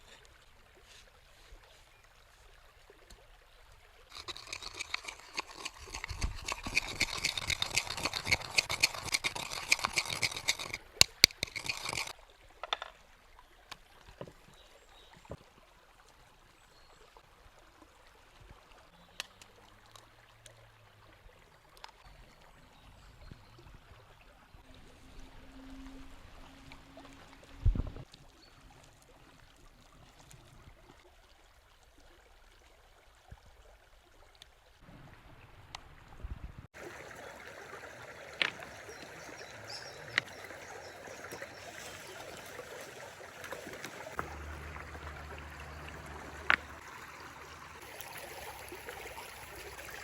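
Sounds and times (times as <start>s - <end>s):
liquid pouring: 4.1s - 12.2s, 36.8s - 50.0s.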